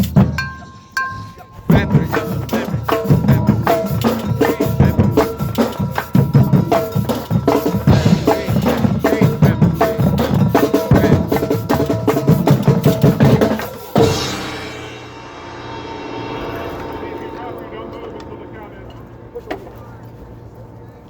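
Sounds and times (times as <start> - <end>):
marching band drums: 0.0 - 0.6, 1.6 - 20.8
pitched mallet notes: 0.0 - 15.2
bass drum strokes: 1.7 - 21.0
loud accented ringing hit: 14.0 - 21.0.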